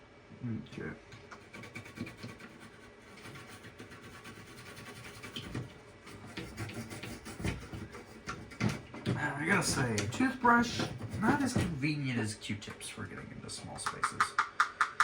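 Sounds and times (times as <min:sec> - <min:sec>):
toothbrush scrubbing circuit board: 0:01.3 - 0:08.9.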